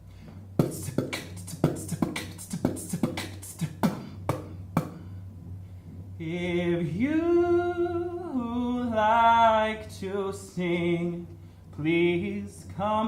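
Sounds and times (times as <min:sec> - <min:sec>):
person beatboxing: 0:00.6 - 0:05.1.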